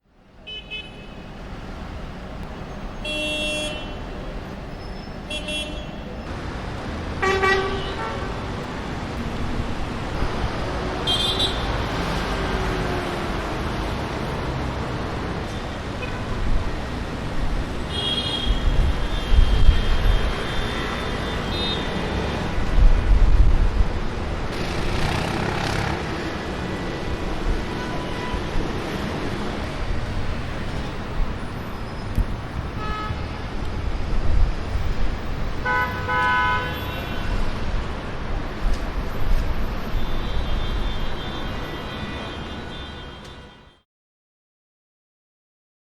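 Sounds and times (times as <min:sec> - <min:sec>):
engine and road noise rumble: 0:00.1 - 0:42.7
car horns honking: 0:03.0 - 0:04.1, 0:05.3 - 0:06.2, 0:07.2 - 0:08.5, 0:11.0 - 0:11.9, 0:17.9 - 0:22.2, 0:35.6 - 0:37.4.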